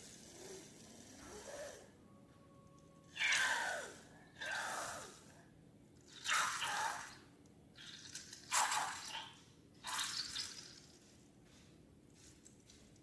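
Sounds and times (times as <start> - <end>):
liquid pouring and splashing: 7.8 - 11.1.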